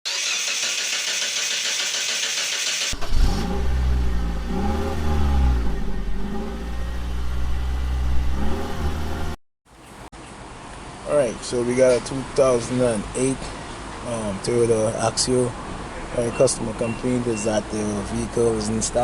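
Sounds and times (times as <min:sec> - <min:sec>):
car engine revving: 0:02.7 - 0:09.4.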